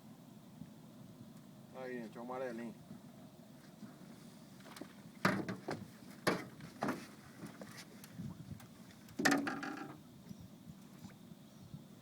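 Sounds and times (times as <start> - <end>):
fish knocking and splashing: 9.2 - 10.0.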